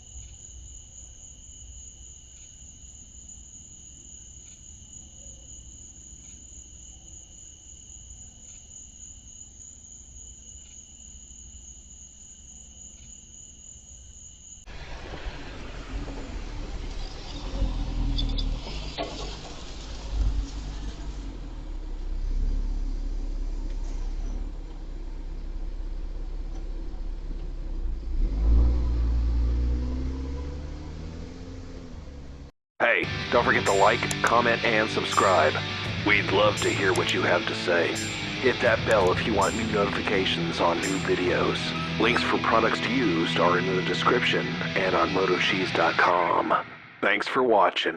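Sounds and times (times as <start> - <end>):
insects trilling: 0.0 - 22.1
faint ticks: 2.3 - 2.6, 4.4 - 4.7, 6.2 - 6.4, 8.4 - 8.7, 12.9 - 13.2
car engine passing by: 14.7 - 46.6.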